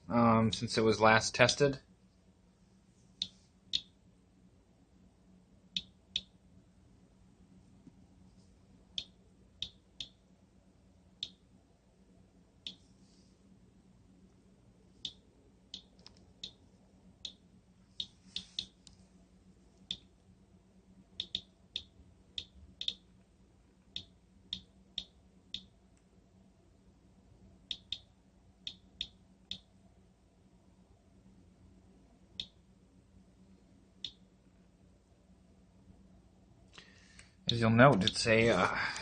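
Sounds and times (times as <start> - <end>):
geiger counter clicking: 3.2 - 3.9, 5.8 - 6.4, 8.9 - 10.2, 11.2 - 11.4, 15.0 - 16.6, 17.2 - 17.4, 18.0 - 18.8, 19.8 - 20.1, 21.2 - 23.2, 23.8 - 25.7, 27.7 - 29.7, 32.4 - 32.6.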